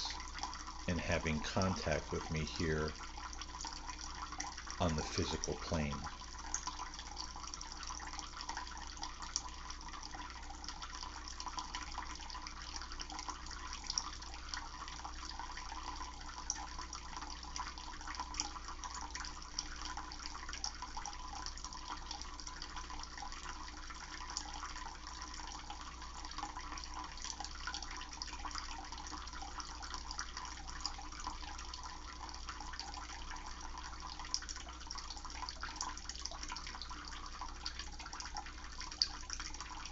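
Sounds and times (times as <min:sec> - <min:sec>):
constant low hum: 0:00.0 - 0:03.1
water running: 0:00.0 - 0:17.4.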